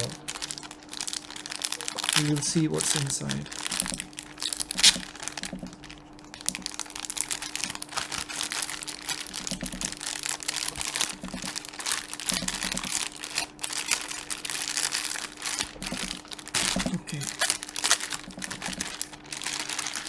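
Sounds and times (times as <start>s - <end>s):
faint steady hum: 0.0s - 20.0s
packaging torn and crinkled: 0.0s - 20.0s.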